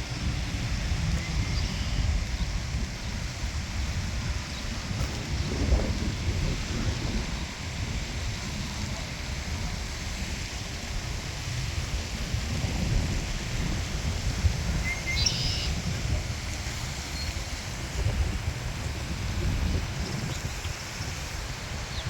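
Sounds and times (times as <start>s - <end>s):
wind buffeting microphone: 0.0s - 22.0s
bird chirp: 14.9s - 15.7s.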